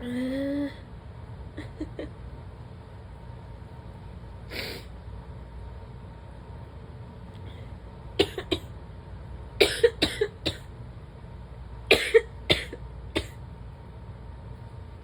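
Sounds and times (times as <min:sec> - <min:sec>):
person coughing: 0:08.2 - 0:08.7, 0:09.6 - 0:10.7, 0:11.9 - 0:13.4.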